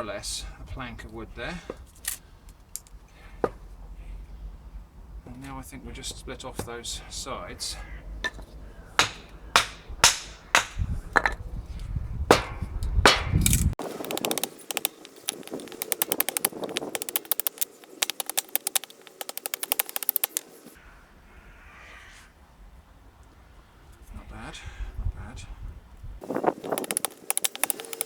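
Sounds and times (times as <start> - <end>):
mallet striking hatchet: 9.0 - 10.8, 12.3 - 13.5.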